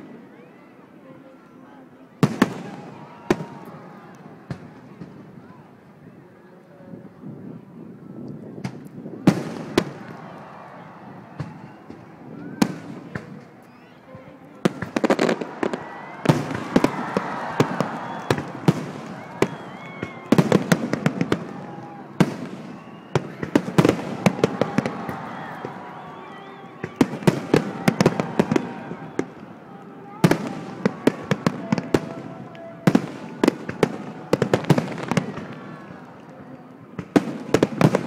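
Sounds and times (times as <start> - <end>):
fireworks banging and crackling: 2.2 - 3.8, 4.4 - 5.5, 8.6 - 13.9, 14.6 - 38.0.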